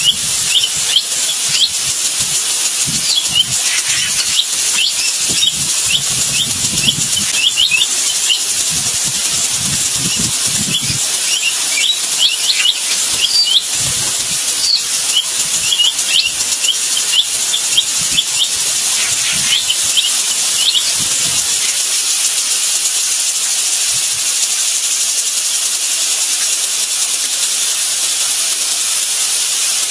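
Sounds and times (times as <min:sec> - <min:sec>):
bird chirps: 0:00.0 - 0:22.3
loud steady hiss: 0:00.0 - 0:29.9.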